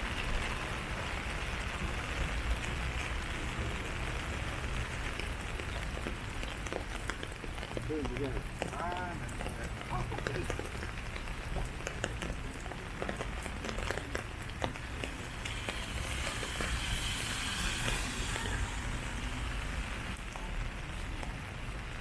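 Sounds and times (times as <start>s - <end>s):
small scattered clicks and taps: 5.1s - 15.8s
hiss: 15.5s - 19.4s.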